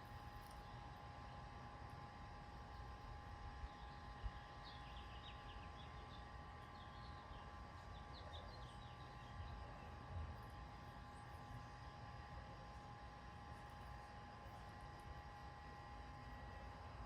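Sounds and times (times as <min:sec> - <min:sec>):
low hum and rumble: 0:00.0 - 0:17.0
small birds twittering: 0:03.6 - 0:10.0.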